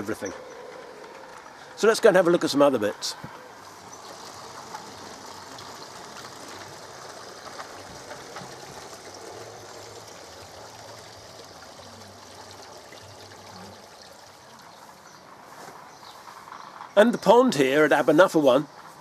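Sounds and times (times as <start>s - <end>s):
water trickling: 3.4s - 17.5s.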